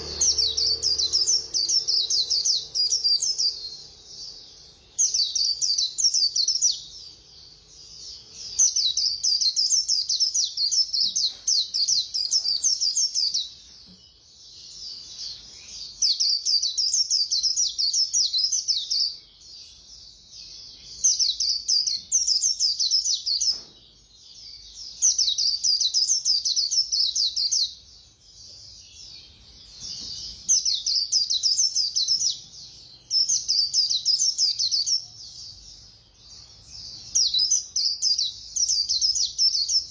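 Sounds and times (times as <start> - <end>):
bird twittering warble: 0.0 - 7.1.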